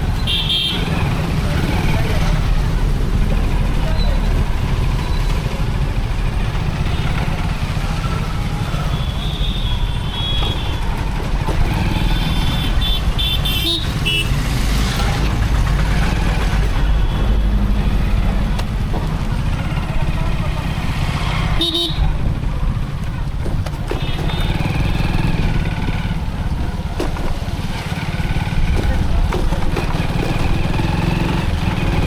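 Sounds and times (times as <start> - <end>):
motorcycle rumble: 0.0 - 32.0
vehicle horns beeping: 0.1 - 1.0, 8.9 - 10.9, 12.0 - 14.4, 21.6 - 22.1, 23.9 - 24.9.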